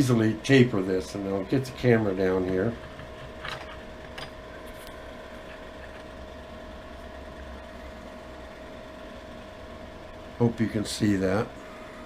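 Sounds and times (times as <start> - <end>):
low machine hum with tone: 0.0 - 12.0.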